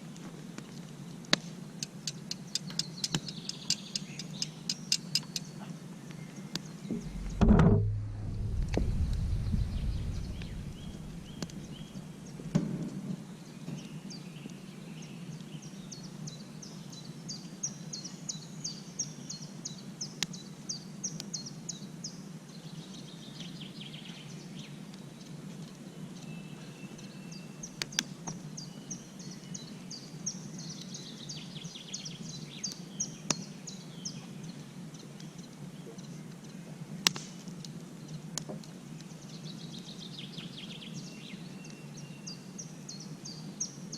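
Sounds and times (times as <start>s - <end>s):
low outdoor background: 0.0s - 43.9s
songbird chirping: 1.8s - 20.5s, 39.0s - 43.9s.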